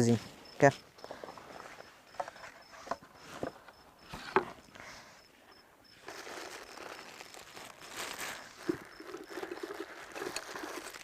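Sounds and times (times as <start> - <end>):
soft rustling: 5.9 - 11.0.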